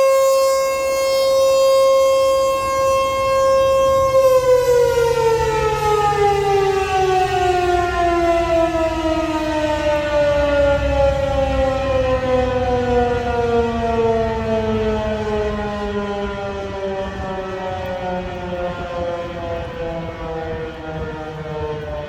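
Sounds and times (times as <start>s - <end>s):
siren winding down: 0.0s - 22.0s.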